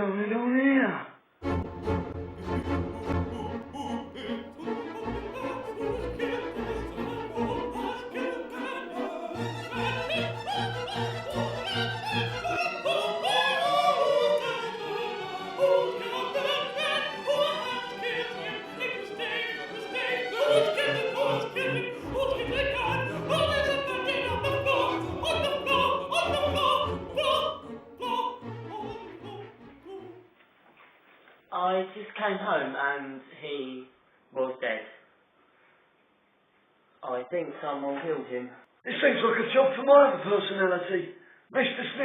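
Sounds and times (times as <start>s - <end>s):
orchestra playing: 1.4s - 30.2s
operatic singing voice: 1.4s - 30.3s.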